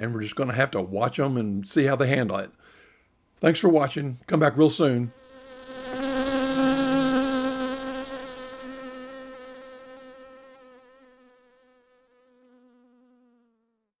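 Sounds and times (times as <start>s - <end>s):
honey bees buzzing: 5.0s - 13.5s.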